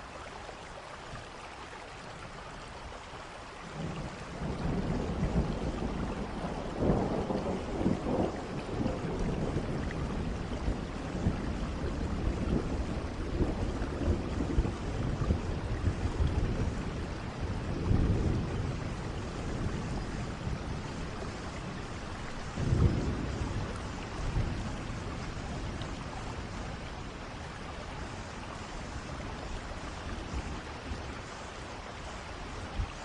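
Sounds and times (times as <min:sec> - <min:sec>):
steady rain: 0:00.0 - 0:33.0
rolling thunder: 0:03.8 - 0:28.2.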